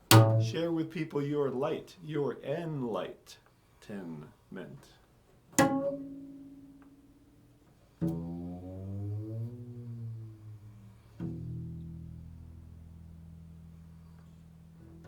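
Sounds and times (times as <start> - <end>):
deep ringing instrumental notes: 8.0 - 12.8.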